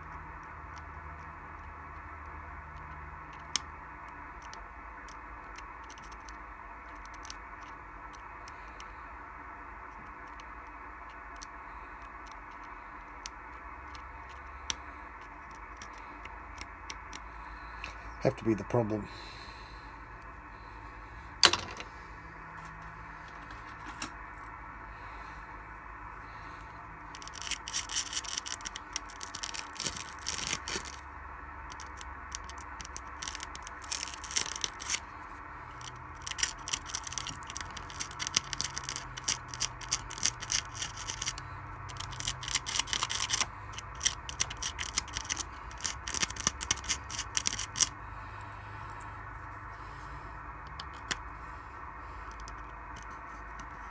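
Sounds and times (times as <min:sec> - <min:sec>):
low hum: 0:12.8 - 0:53.9
scraping on circuit board: 0:35.8 - 0:49.6.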